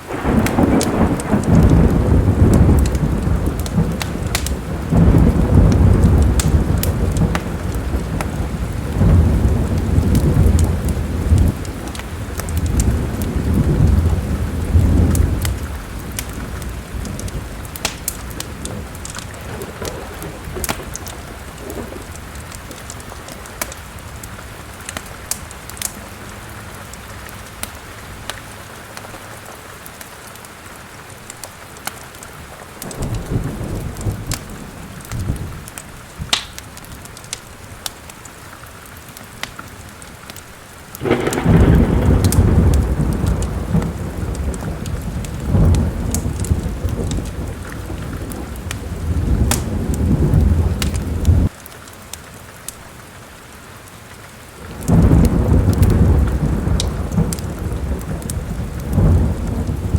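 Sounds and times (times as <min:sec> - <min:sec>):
loud thunder clap: 0:00.0 - 0:23.8, 0:32.8 - 0:36.4, 0:41.0 - 0:51.5, 0:54.6 - 0:59.9
thunder rumbling: 0:00.0 - 0:28.4, 0:32.8 - 0:37.3, 0:41.0 - 0:51.5, 0:54.6 - 0:59.9
steady rain: 0:00.0 - 0:59.9
wood fire crackling: 0:00.0 - 0:59.9.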